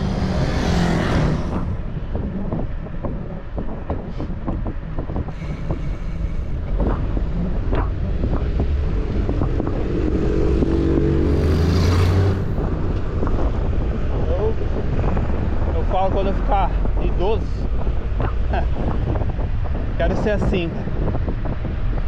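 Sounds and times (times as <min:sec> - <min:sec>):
passing vehicle engine hum: 0:00.0 - 0:02.2, 0:05.4 - 0:15.7
traffic rumble: 0:00.0 - 0:22.0
wind on microphone: 0:00.0 - 0:22.0.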